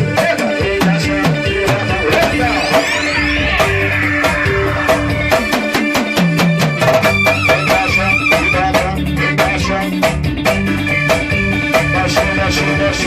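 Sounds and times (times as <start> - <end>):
bass notes: 0.0 - 13.0
fast percussion beat: 0.0 - 13.0
high wavering melody: 0.8 - 8.8.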